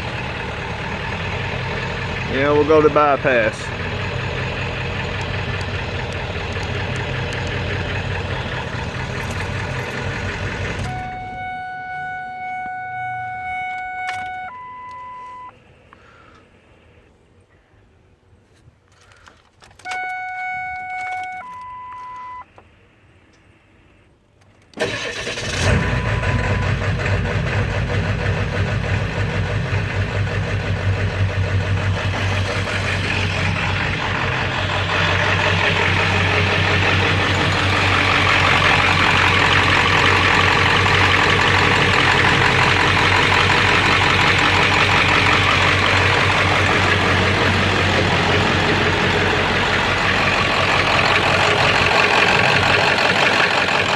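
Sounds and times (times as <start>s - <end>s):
diesel engine starting and idling: 0.0s - 16.9s, 24.6s - 53.9s
electronic beeps: 19.9s - 22.4s.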